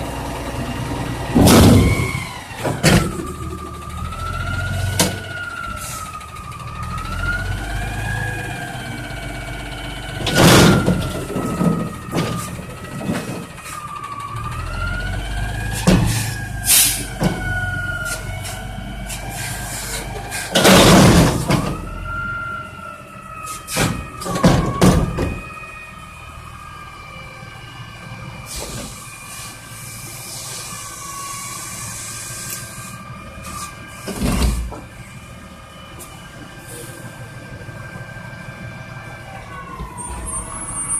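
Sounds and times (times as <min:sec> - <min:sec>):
metal bangs and clanks: 0:01.4 - 0:03.4, 0:10.2 - 0:13.5, 0:20.5 - 0:21.8.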